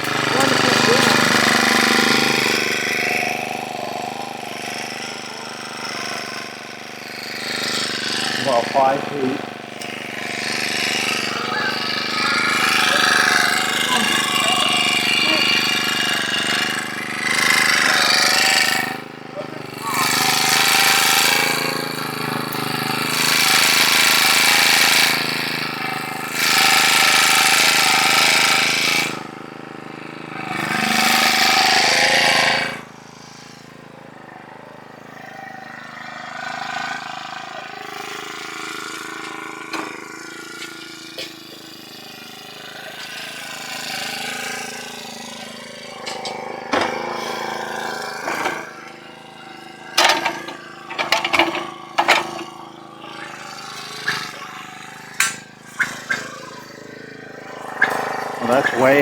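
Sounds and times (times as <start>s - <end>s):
post driver hammering: 0.0s - 2.6s, 45.2s - 49.0s, 50.0s - 52.6s
engine idling: 0.0s - 59.0s.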